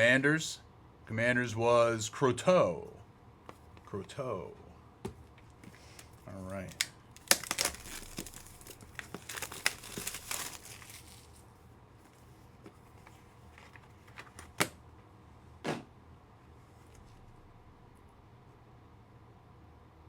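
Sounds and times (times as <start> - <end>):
foil wrapper crinkling: 5.8 - 11.6.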